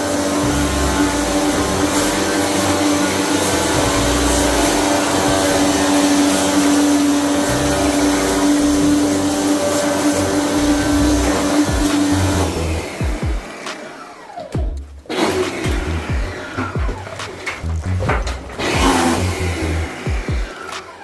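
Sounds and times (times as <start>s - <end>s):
rushing hiss: 0.0s - 14.4s
electric motor humming: 0.0s - 21.0s.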